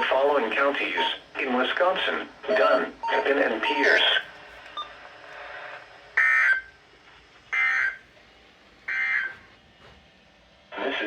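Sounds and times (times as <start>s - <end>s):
faint radio hiss: 0.0s - 6.2s, 10.7s - 11.0s
digital data tone bursts: 2.6s - 4.1s.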